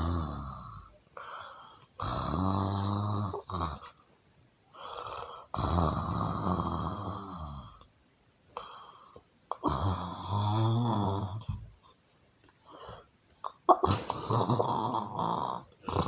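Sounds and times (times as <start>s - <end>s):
person snoring: 0.0s - 0.9s, 4.8s - 7.8s, 9.5s - 11.6s, 13.9s - 16.0s.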